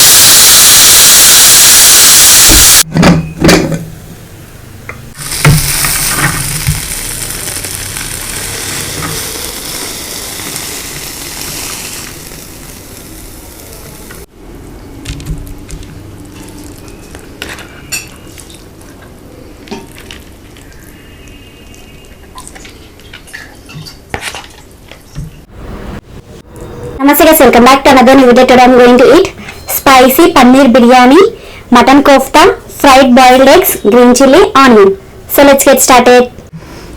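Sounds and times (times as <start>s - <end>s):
food sizzling in hot oil: 5.1s - 14.3s.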